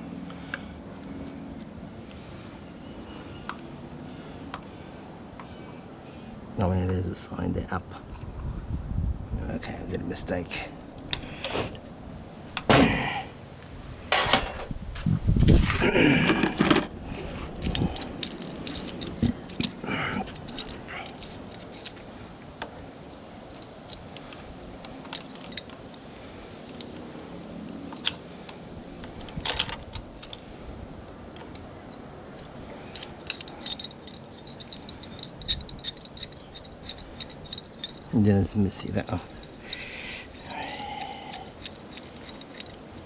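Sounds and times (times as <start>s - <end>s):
metallic clinks of tools: 17.6s - 22.0s, 23.6s - 26.0s, 32.4s - 43.0s.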